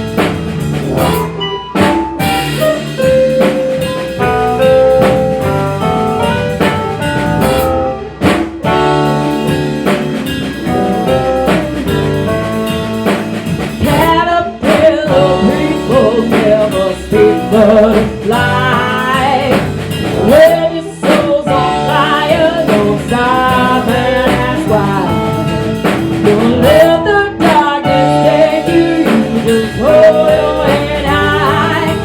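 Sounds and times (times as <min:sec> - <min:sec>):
sustained melodic lead notes: 0:00.0 - 0:13.8
drums: 0:00.0 - 0:32.0.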